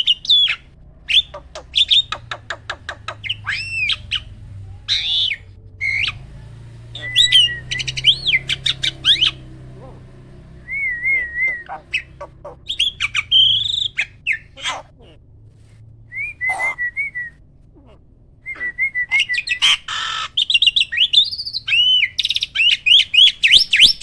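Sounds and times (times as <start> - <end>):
starling singing varied song: 0.0 - 15.2.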